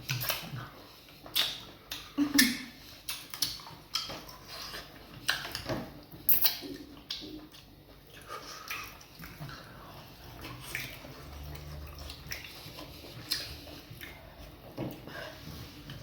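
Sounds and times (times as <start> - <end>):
wet chewing smacks and clicks: 0.0 - 2.1, 2.9 - 15.1.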